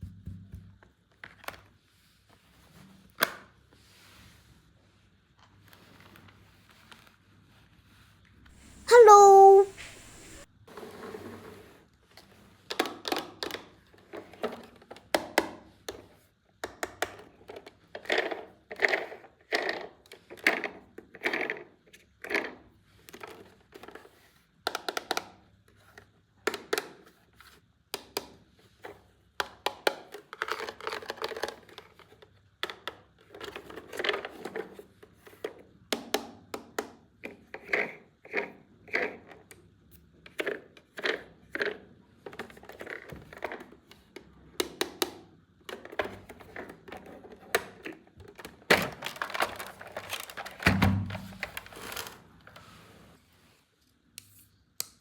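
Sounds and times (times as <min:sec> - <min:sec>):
packaging rustling: 0:48.9 - 0:52.2.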